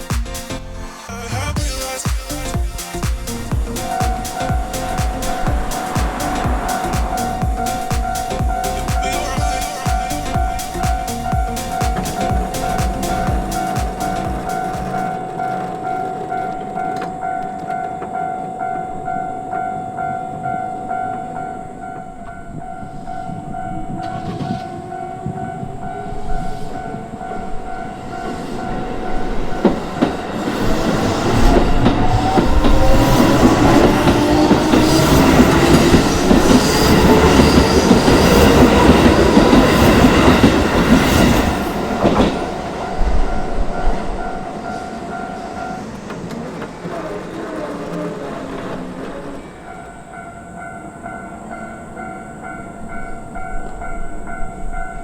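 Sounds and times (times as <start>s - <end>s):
wheels clacking over rail joints: 2.3s - 19.2s, 27.1s - 54.7s
electric train motor whine: 3.3s - 19.2s, 26.8s - 52.6s
level crossing alarm ding: 8.0s - 15.0s.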